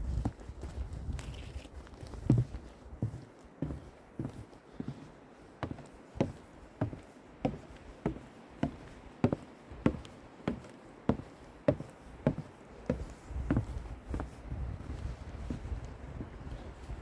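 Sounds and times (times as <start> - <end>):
footsteps walking: 0.0 - 17.0.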